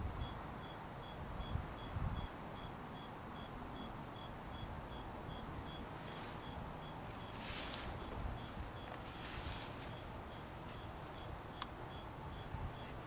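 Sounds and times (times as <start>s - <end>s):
insect chirping: 0.2s - 13.0s
short hiss: 7.3s - 8.0s.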